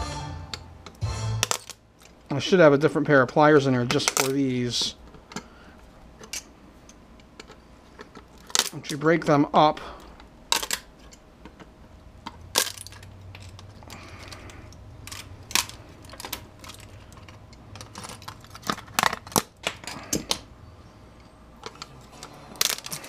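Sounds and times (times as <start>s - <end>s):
pliers breaking plastic connectors: 0.8s - 2.2s, 3.9s - 4.5s, 8.2s - 9.0s, 10.5s - 11.6s, 12.2s - 20.5s, 21.6s - 23.0s.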